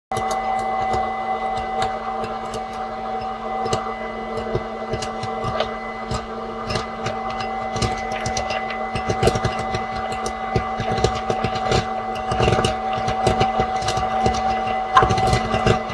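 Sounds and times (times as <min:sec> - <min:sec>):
popcorn maker motor hum: 0:00.1 - 0:15.9
corn kernels popping: 0:04.4 - 0:15.9.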